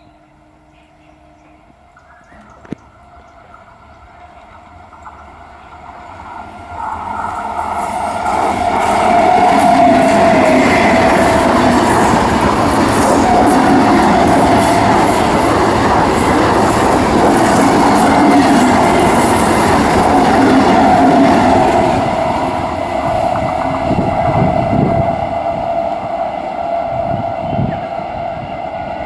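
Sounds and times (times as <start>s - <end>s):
train whining tone: 0.0s - 29.0s
train wheels clattering on track: 1.4s - 27.2s.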